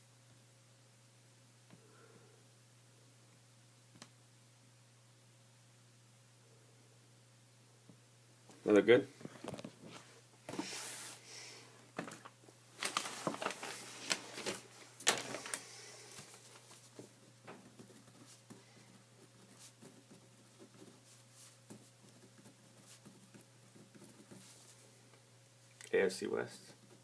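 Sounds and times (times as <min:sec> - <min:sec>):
handling rustles on tabletop: 0:09.2 - 0:11.2.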